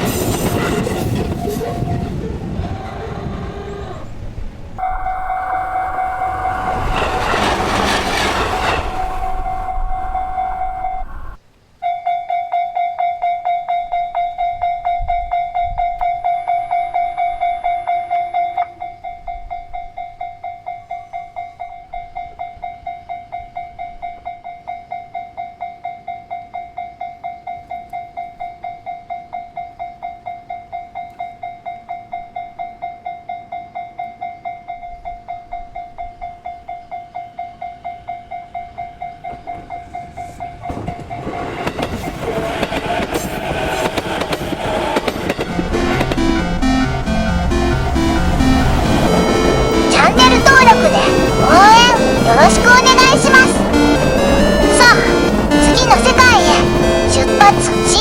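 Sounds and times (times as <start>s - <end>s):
train passing rushing noise: 0.0s - 11.4s, 37.6s - 58.0s
train horn: 4.8s - 11.4s
level crossing warning bell: 4.8s - 58.0s.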